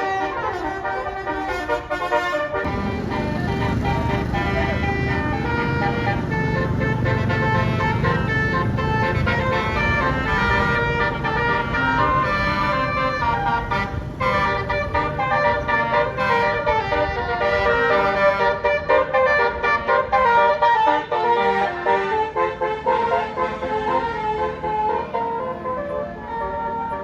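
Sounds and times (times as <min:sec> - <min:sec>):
bus rumble: 0:00.0 - 0:27.0
multi-tone air horn melody: 0:00.0 - 0:27.0.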